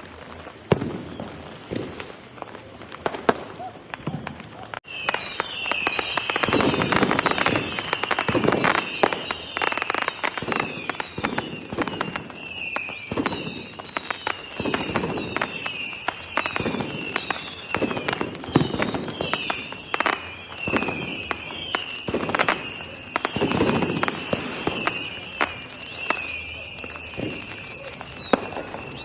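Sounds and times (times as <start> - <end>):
fireworks bangs and crackles: 0.0 - 29.0
rumbling firework booms: 0.7 - 2.1, 10.4 - 19.8, 20.6 - 29.0
falling whistles: 0.9 - 2.6, 3.6 - 29.0.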